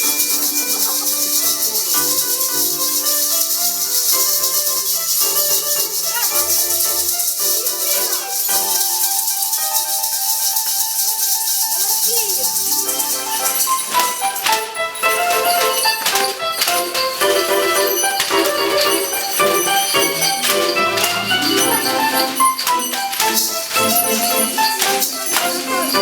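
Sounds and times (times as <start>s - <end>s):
recorded music with melody: 0.0s - 11.7s, 12.4s - 26.0s
paper rustling: 15.6s - 26.0s.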